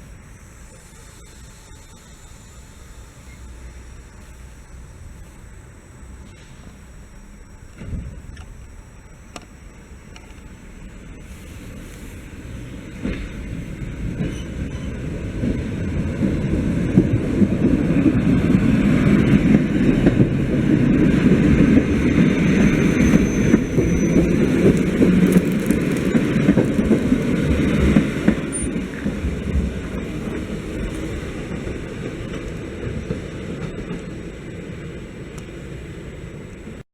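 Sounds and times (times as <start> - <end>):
train passing: 9.8 - 36.8.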